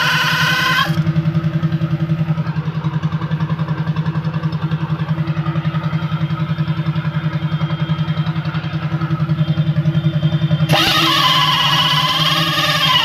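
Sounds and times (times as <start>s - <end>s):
small machine idling: 0.0s - 13.0s.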